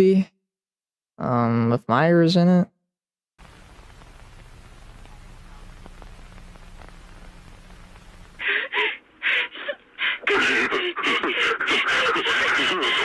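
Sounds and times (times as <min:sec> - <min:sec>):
low hum and hiss: 0:03.4 - 0:11.2
person gasping breaths: 0:08.4 - 0:13.0.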